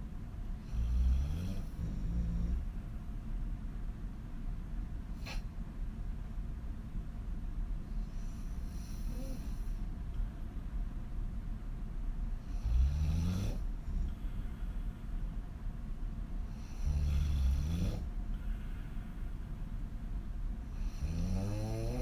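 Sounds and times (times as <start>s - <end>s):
woman snoring: 0.7s - 2.6s, 8.5s - 9.8s, 12.5s - 14.2s, 16.6s - 18.1s, 20.8s - 22.0s.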